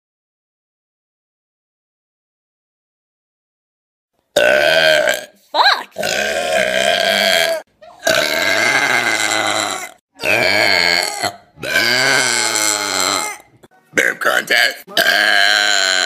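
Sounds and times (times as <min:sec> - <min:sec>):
person burping loudly: 0:04.4 - 0:05.4, 0:06.0 - 0:16.0.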